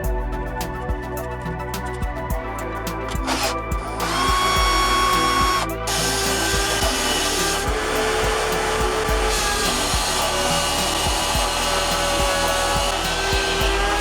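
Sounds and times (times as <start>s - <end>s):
background music with beat: 0.0s - 14.0s
power tool whining: 3.2s - 14.0s.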